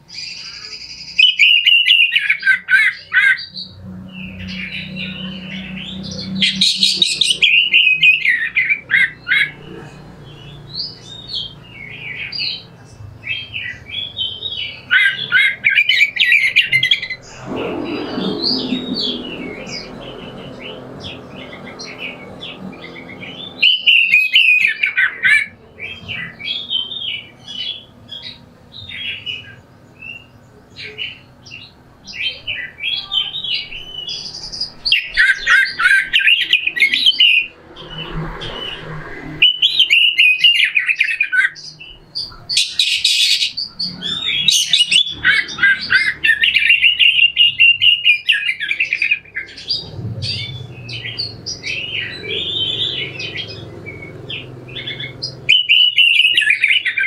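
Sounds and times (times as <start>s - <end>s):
bird singing harsh chirps: 0.0s - 57.0s.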